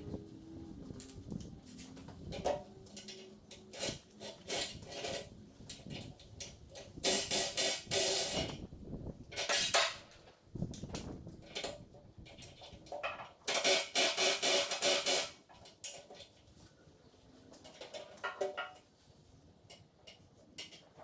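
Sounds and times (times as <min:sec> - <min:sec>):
metal parts clanking and scraping: 0:01.6 - 0:08.6, 0:09.3 - 0:10.2.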